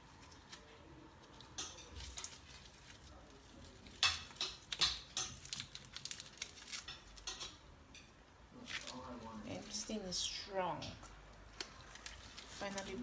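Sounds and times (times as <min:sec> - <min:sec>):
foil wrapper crinkling: 0:00.0 - 0:07.4, 0:11.5 - 0:13.0.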